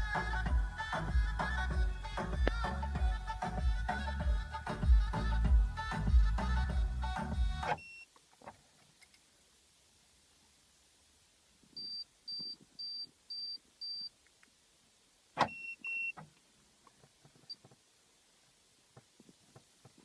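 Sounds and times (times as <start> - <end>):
short high beeps: 7.7 - 8.1, 11.8 - 14.1, 15.4 - 16.2
short lower beeps: 11.8 - 14.1, 15.5 - 16.2.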